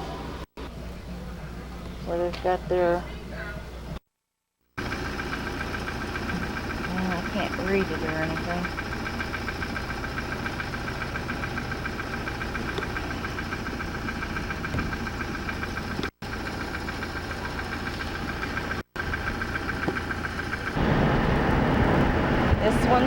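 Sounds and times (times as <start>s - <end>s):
mechanical hum: 0.0s - 4.0s
pulsing high whine: 4.8s - 23.0s.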